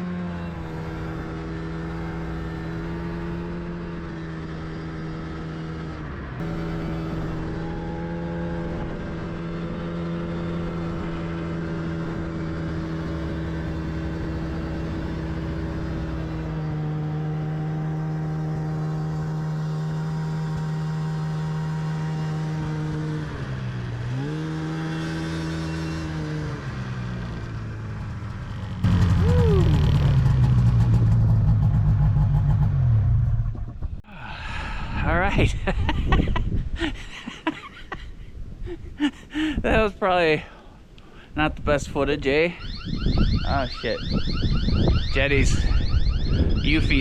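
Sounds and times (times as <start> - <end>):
snowmobile engine running: 0.0 - 34.0.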